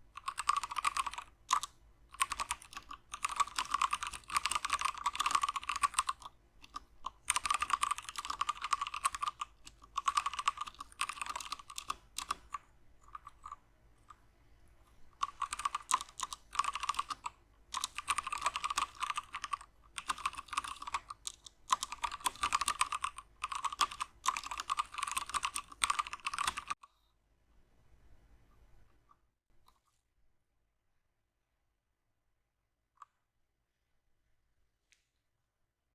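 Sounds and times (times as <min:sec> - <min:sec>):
mechanical keyboard typing: 0:00.1 - 0:13.6, 0:15.2 - 0:26.8.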